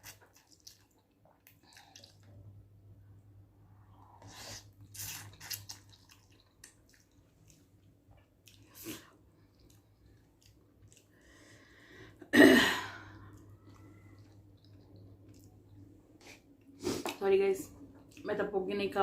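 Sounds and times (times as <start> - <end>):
person chewing: 0.0 - 2.4, 4.2 - 11.4, 13.1 - 17.2.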